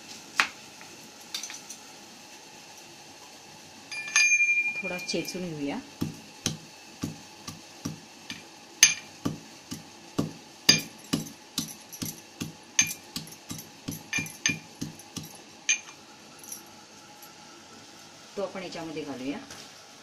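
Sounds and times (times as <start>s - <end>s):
ginger being pounded: 5.9s - 15.4s.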